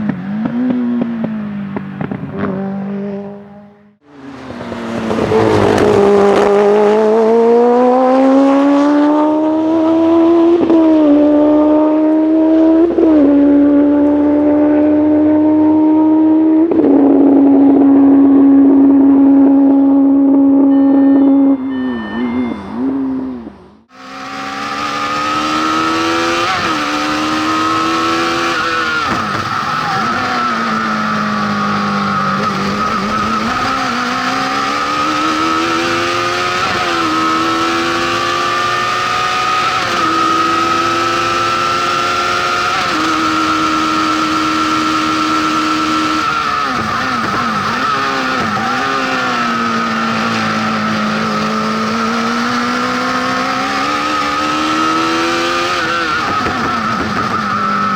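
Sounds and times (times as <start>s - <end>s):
motorcycle engine revving hard: 0.0s - 57.9s
steady high whine: 16.7s - 23.9s.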